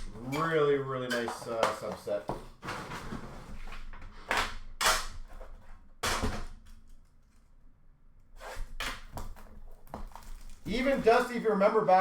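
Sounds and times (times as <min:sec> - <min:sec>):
card packs rustling: 0:00.0 - 0:03.8, 0:09.5 - 0:11.4.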